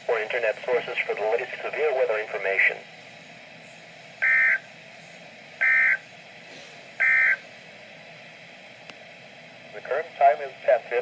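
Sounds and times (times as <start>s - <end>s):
buzzy data bursts: 4.2s - 4.6s.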